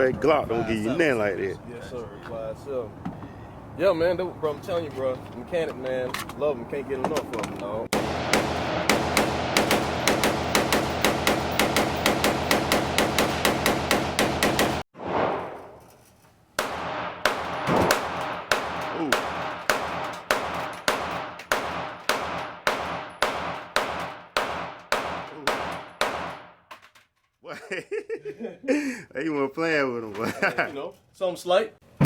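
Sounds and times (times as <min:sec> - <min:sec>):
rapid gunfire: 0:07.9 - 0:15.5, 0:16.6 - 0:26.5.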